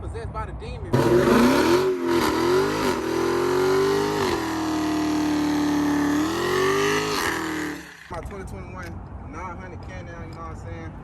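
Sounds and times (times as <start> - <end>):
car engine revving: 0.9 - 8.1.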